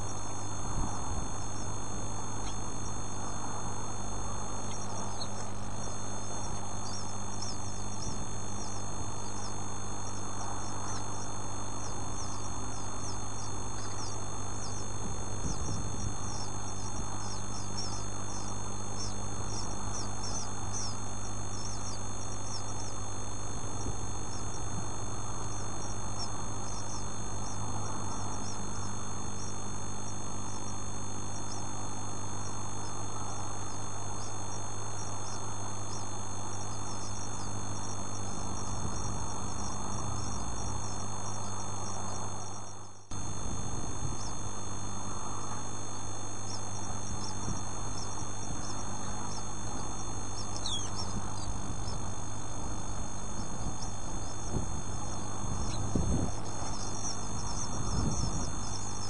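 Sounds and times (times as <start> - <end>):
low electrical hum: 0.0 - 59.0
chicks peeping: 4.7 - 9.6, 10.4 - 23.0, 50.3 - 52.0.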